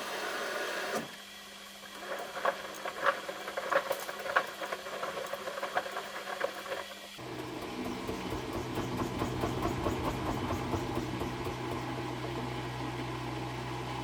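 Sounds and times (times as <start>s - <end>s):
washing machine drum running: 7.2s - 14.0s
pattering clicks inside machine: 7.6s - 11.8s.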